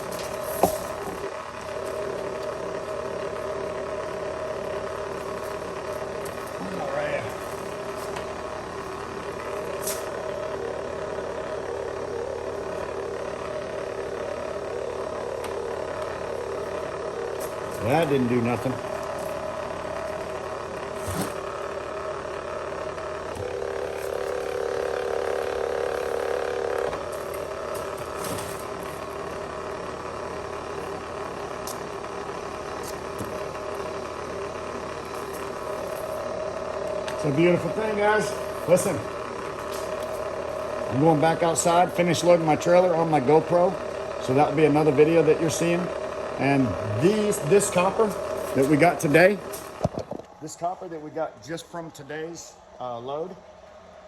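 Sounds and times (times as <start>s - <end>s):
mechanical hum: 0.0s - 54.0s.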